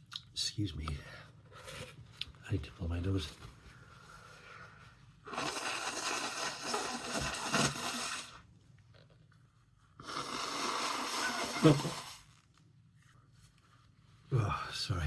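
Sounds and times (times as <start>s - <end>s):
person blowing nose into tissue: 5.2s - 8.4s, 10.0s - 12.4s.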